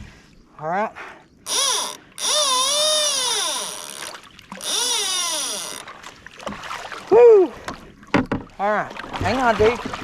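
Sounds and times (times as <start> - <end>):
fishing reel drag squealing: 1.5 - 5.8.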